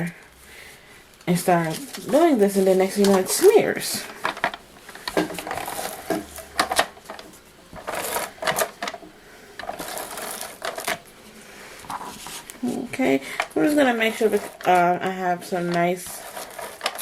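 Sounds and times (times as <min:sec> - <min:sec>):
cardstock clicks and scrapes: 0:15.7 - 0:17.0.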